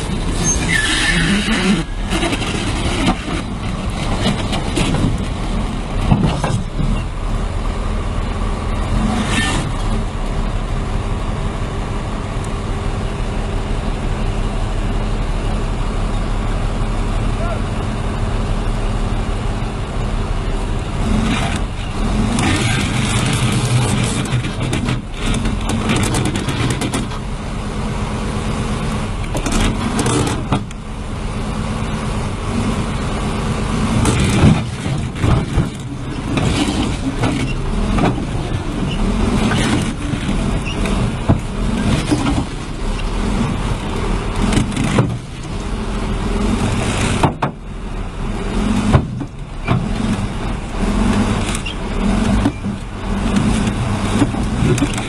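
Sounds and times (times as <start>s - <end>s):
heavy engines running: 0.0s - 55.0s
knocks and clatter: 2.1s - 7.1s, 22.3s - 27.2s, 29.2s - 30.8s, 34.0s - 42.6s, 44.4s - 45.5s, 46.6s - 47.6s, 48.7s - 55.0s.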